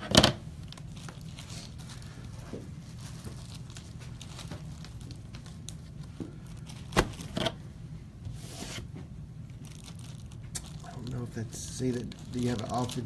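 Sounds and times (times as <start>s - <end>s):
steady low hum: 0.0s - 13.0s
trading cards rustling: 0.7s - 7.4s, 9.6s - 13.0s.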